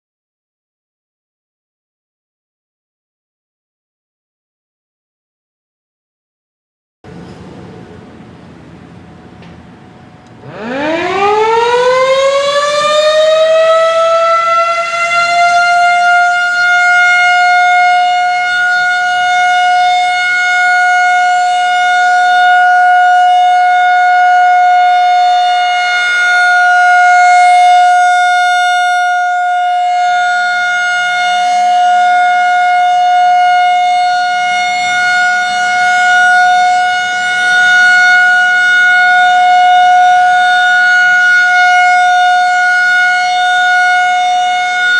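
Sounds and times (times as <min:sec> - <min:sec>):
tornado siren winding up: 0:10.2 - 0:44.9.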